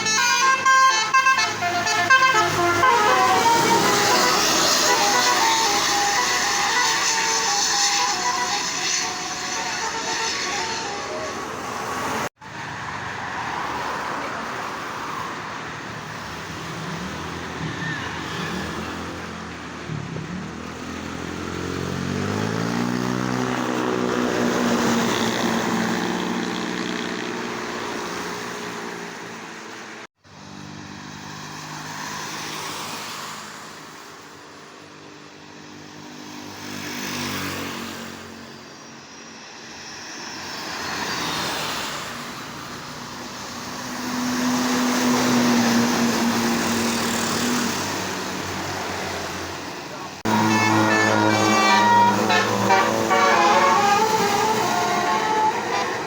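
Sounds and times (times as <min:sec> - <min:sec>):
bus engine accelerating: 0:00.0 - 0:12.7, 0:37.4 - 0:56.0
buses driving past: 0:00.0 - 0:56.0.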